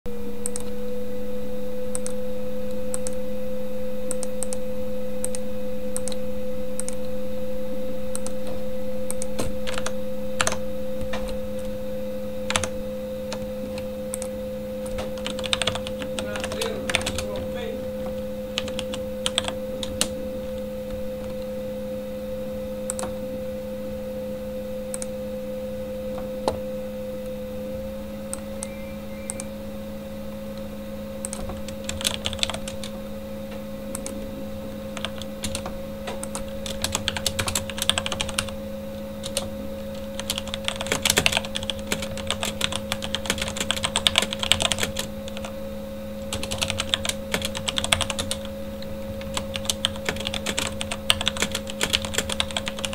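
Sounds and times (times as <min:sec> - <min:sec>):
computer fan humming: 0:00.0 - 0:52.9
typing on mechanical keyboard: 0:09.1 - 0:10.6, 0:12.5 - 0:12.7, 0:13.3 - 0:17.4, 0:18.6 - 0:20.1, 0:31.3 - 0:32.9, 0:35.0 - 0:38.5, 0:39.2 - 0:45.5, 0:46.3 - 0:48.5, 0:49.2 - 0:52.9.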